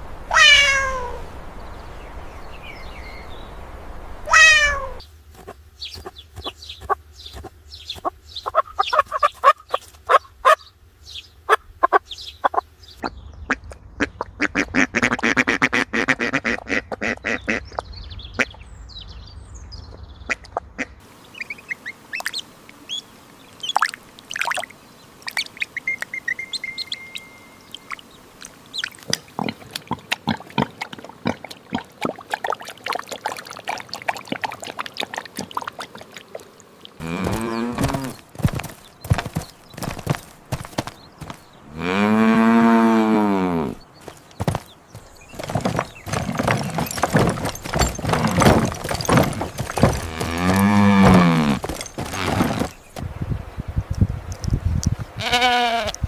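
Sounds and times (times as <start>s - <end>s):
bird calls: 0.0s - 53.0s
ducks quacking: 7.9s - 10.7s, 11.5s - 17.8s.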